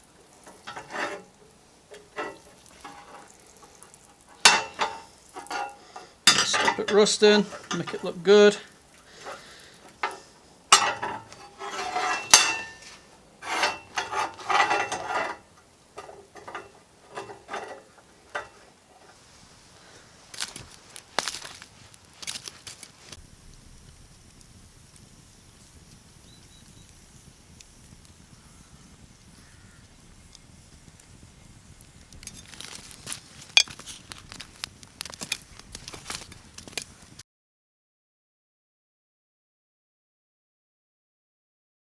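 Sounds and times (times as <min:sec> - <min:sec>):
rubbing and scraping on steel: 0:00.0 - 0:23.2
light metallic clinks: 0:00.3 - 0:19.2, 0:32.2 - 0:34.5.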